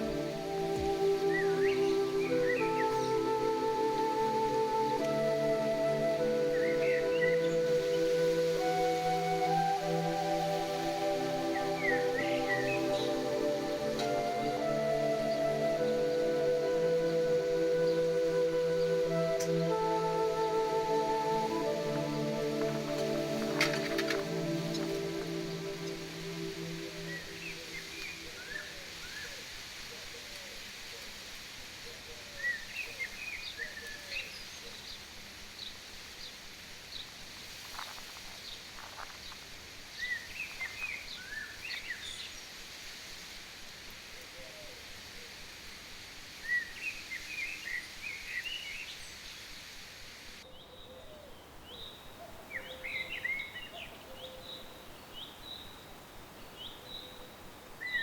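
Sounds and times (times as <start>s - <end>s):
small birds chirping: 0.0s - 29.5s, 50.4s - 58.0s
outdoor background hiss: 0.0s - 58.0s.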